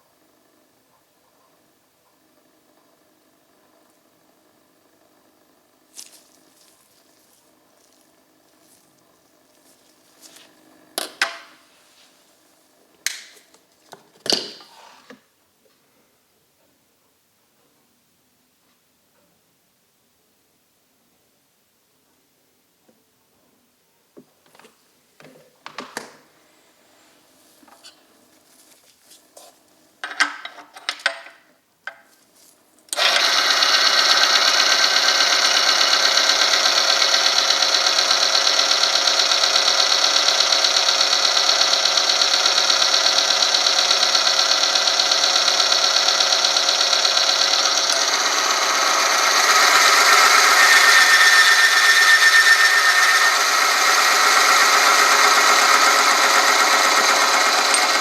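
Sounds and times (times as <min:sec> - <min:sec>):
machine motor rattling whir: 0:32.9 - 0:58.0.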